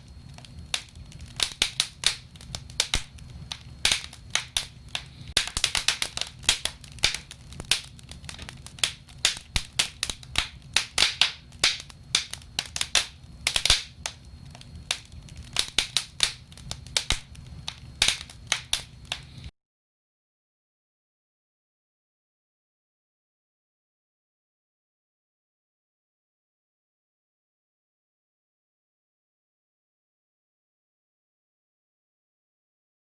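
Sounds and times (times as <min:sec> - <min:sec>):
wood fire crackling: 0:00.0 - 0:19.5.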